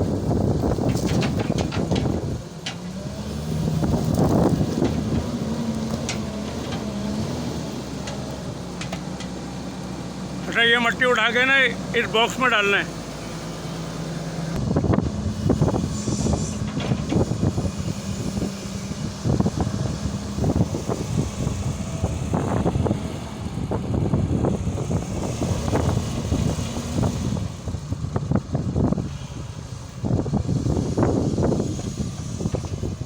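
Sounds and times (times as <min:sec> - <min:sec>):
diesel engine running: 0:00.0 - 0:33.0
excavator knocks and clanks: 0:00.7 - 0:03.2, 0:03.8 - 0:09.5, 0:16.6 - 0:18.4.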